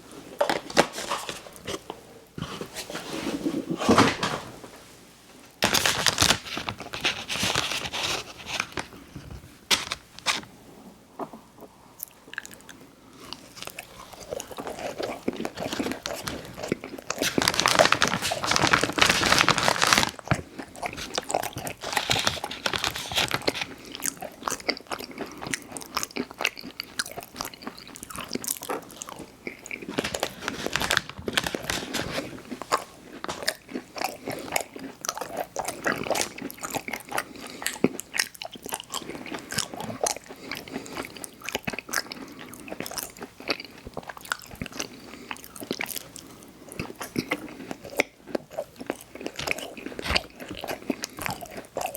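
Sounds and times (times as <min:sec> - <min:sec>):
chewing cookies: 0:11.2 - 0:51.9.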